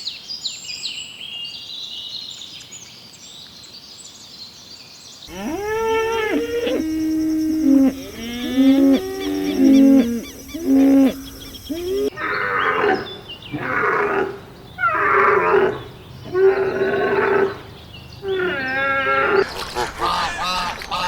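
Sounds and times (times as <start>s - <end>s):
drawn-out animal calls: 5.3s - 12.6s
rough animal calls: 5.3s - 17.6s, 18.2s - 21.0s.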